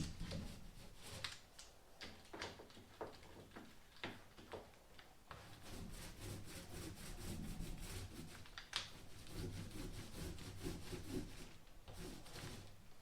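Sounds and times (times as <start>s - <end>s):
brush rubbing on wood: 5.3s - 12.9s.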